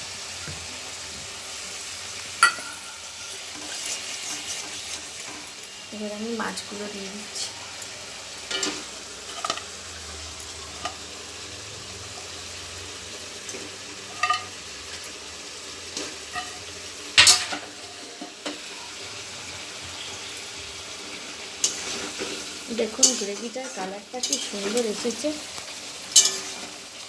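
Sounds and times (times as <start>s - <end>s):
gravy sizzling in a pan: 0.0s - 27.0s
metal spatula scraping a pan: 2.4s - 5.6s, 15.9s - 19.0s, 21.1s - 27.0s.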